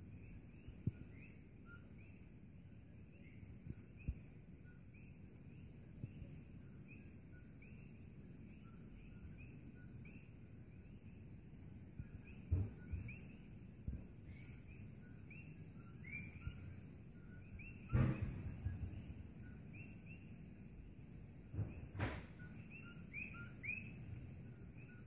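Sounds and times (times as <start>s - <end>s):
steady high-pitched whine: 0.0s - 25.0s
frogs calling: 14.2s - 20.4s, 21.6s - 25.0s.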